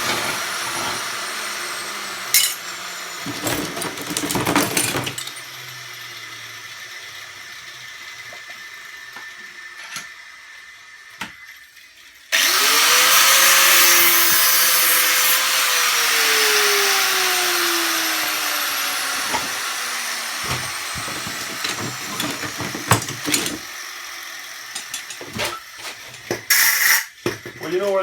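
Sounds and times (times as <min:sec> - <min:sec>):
power tool grinding metal: 0:00.0 - 0:11.4, 0:12.2 - 0:27.2
metal pieces clinking: 0:02.4 - 0:02.7.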